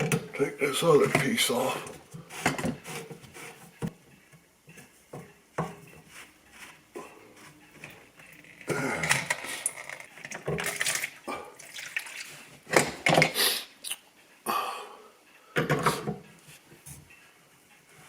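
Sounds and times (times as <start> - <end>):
scraping and rattling of drain parts: 0.0 - 4.0, 4.6 - 13.4
water splashing from drain: 10.6 - 12.4.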